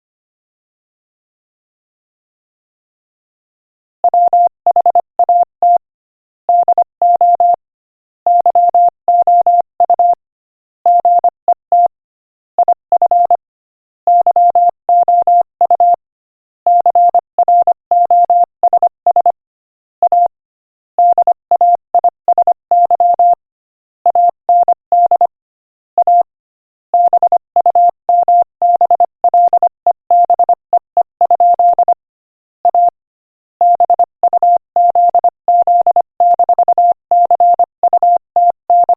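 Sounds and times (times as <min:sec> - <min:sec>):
morse code tone: 0:27.0 - 0:32.0, 0:32.6 - 0:33.0, 0:33.6 - 0:38.9.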